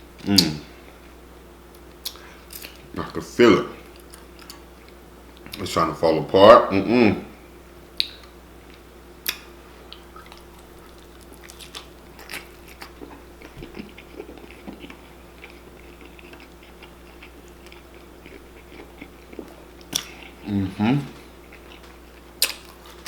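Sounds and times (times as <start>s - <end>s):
faint steady hum: 0.0s - 23.0s
person chewing food: 1.8s - 3.2s, 3.8s - 5.7s, 8.0s - 23.0s
wet mouth clicks: 8.0s - 8.3s.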